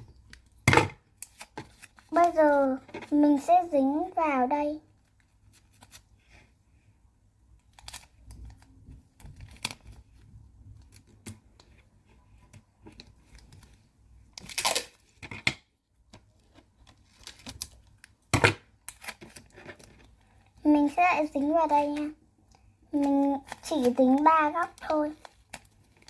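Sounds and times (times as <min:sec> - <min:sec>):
tape and paper crackling: 0:01.1 - 0:03.5, 0:04.9 - 0:06.2, 0:07.6 - 0:15.5, 0:16.1 - 0:18.2, 0:18.8 - 0:22.2, 0:22.9 - 0:26.0
tape ripping: 0:14.4 - 0:15.0.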